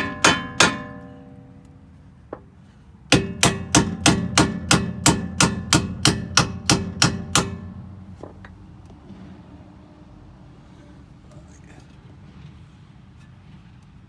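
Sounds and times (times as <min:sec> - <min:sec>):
hammer striking metal: 0:00.0 - 0:02.0, 0:03.1 - 0:08.6.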